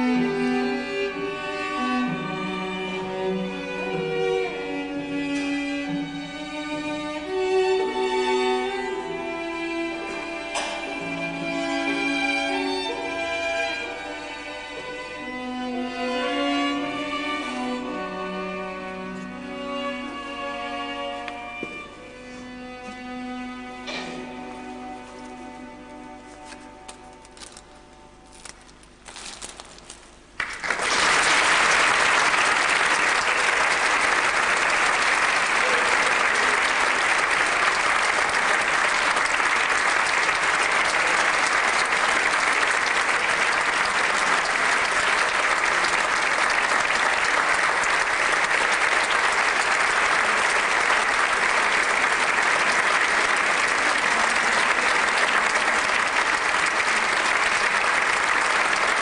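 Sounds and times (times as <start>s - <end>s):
audience applauding: 30.3s - 59.0s.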